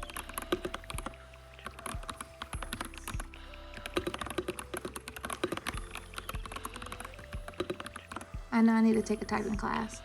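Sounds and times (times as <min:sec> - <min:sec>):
mechanical keyboard typing: 0:03.9 - 0:08.3.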